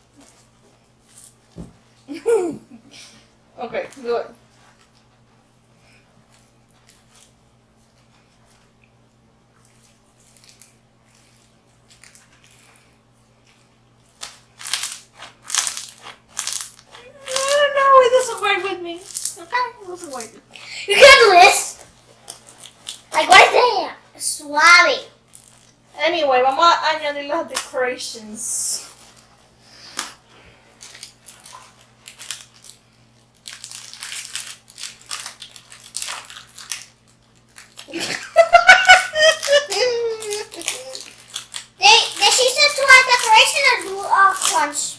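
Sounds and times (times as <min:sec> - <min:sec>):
crunchy slime crackling: 0:09.6 - 0:20.5, 0:30.8 - 0:44.9
crunchy slime squeezed by hand: 0:14.2 - 0:17.6.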